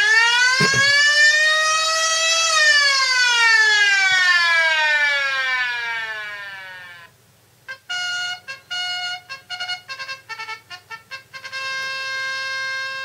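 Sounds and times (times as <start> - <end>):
siren wail from phone speaker: 0.0 - 7.1.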